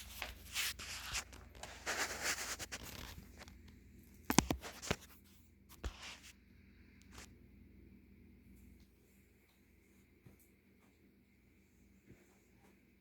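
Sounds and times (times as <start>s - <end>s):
rustling and scraping handling noise: 0.0s - 6.4s.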